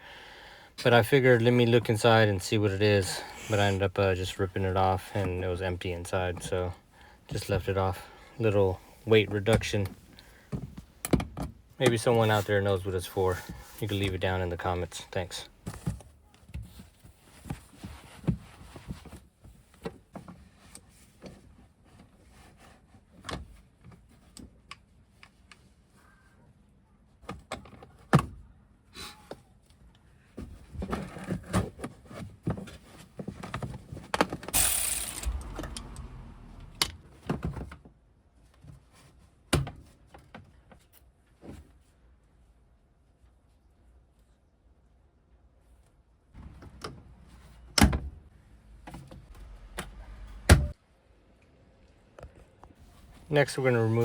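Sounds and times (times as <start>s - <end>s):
short rushing noise: 34.6s - 37.0s.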